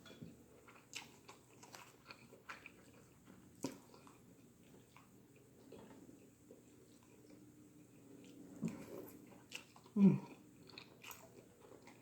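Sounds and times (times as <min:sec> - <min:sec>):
wet chewing mouth sounds: 0:00.6 - 0:12.0.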